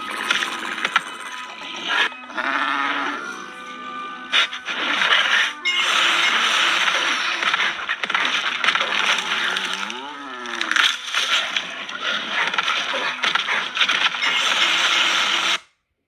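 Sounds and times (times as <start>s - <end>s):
pitched wail: 0.0s - 15.5s
dense crunching and crackling: 4.4s - 15.6s
scattered clicks: 5.0s - 15.7s.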